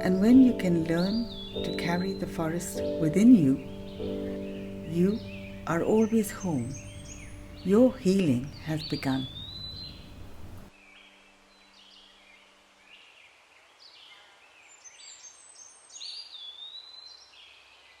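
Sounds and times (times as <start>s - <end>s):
bird chirps: 0.0s - 11.1s
low held background tone: 0.0s - 12.8s.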